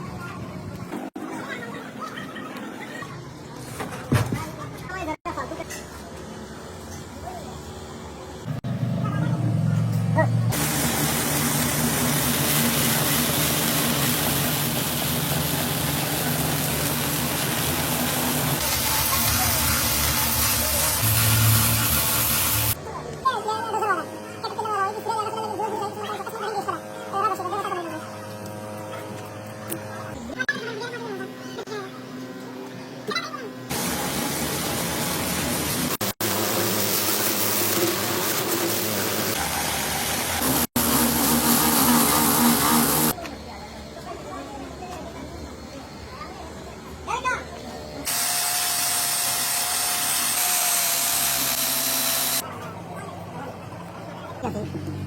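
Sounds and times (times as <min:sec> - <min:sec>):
engine humming with hiss: 0:07.8 - 0:22.8.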